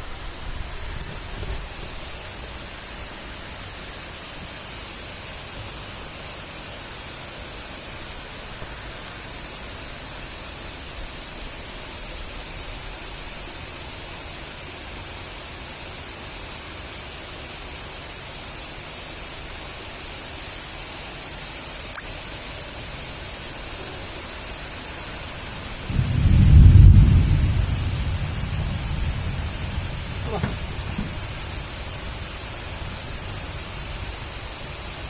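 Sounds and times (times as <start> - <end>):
rain falling: 0.0 - 35.0
loud low rumble: 25.9 - 33.0.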